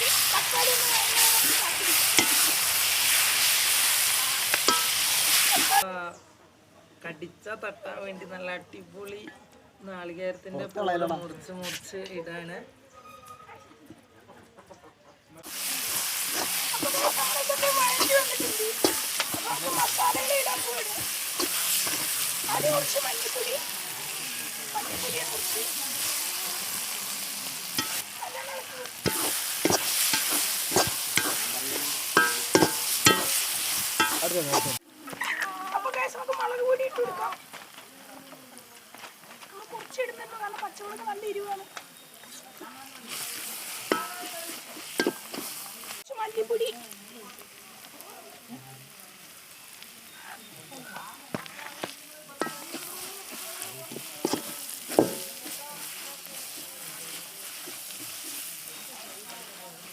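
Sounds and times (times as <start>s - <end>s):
spatula stirring and knocking pan: 0.0s - 5.8s, 15.4s - 23.7s, 27.7s - 34.8s, 43.1s - 46.0s, 51.3s - 59.9s
masala sizzling in a pan: 0.0s - 6.1s, 15.4s - 59.9s
spoon knocking against pan: 32.2s - 33.4s, 45.0s - 45.4s, 54.2s - 55.4s.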